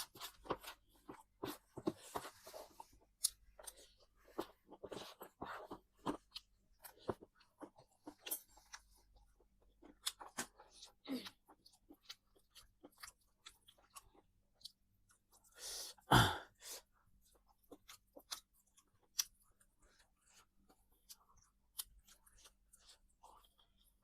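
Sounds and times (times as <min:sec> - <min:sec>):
person chewing and crunching: 0:00.0 - 0:16.0, 0:16.7 - 0:24.0
breathy huff: 0:15.6 - 0:16.8.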